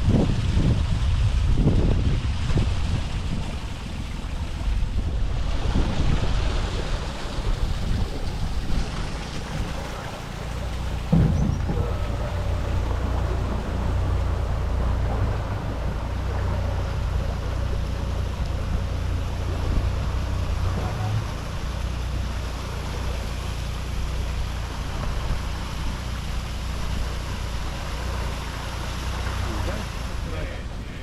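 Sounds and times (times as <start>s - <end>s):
boat motor running: 0.0s - 31.0s
water noise: 0.0s - 31.0s
wind: 0.0s - 31.0s.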